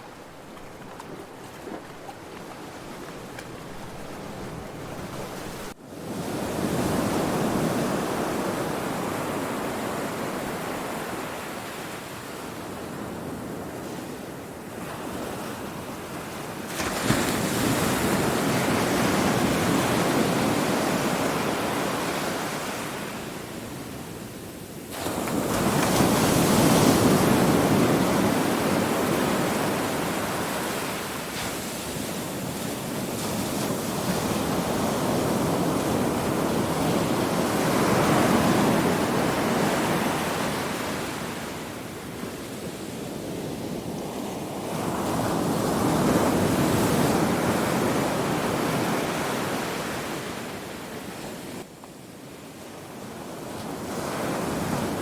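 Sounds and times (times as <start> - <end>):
ocean waves breaking: 0.0 - 11.8, 24.9 - 44.0.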